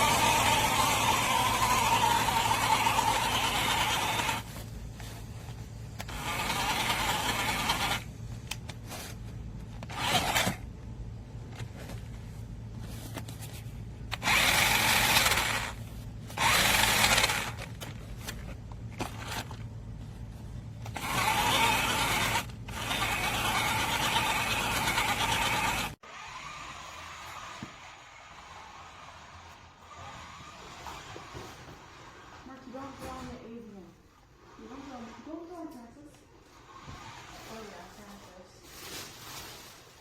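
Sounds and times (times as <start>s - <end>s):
toy truck motor whirring: 0.0s - 10.7s, 14.1s - 19.6s, 20.8s - 32.4s.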